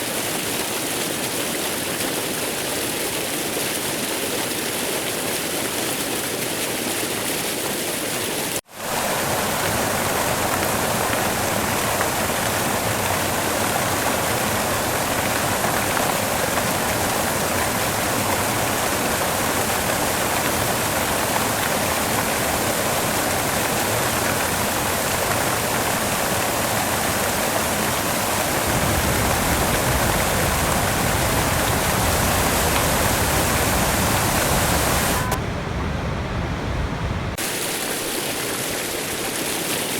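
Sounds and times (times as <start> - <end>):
waterfall rushing: 8.7 - 35.5.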